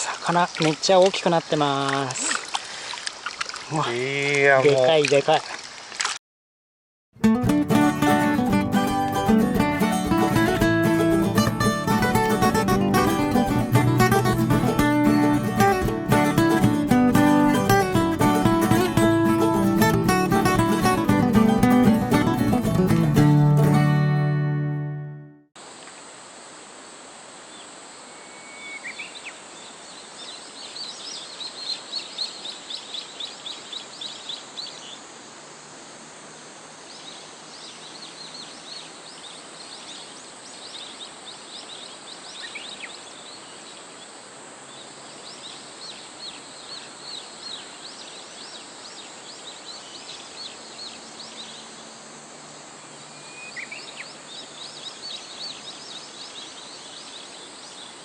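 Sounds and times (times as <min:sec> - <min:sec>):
river water rushing: 0:00.0 - 0:06.1, 0:41.0 - 0:58.0.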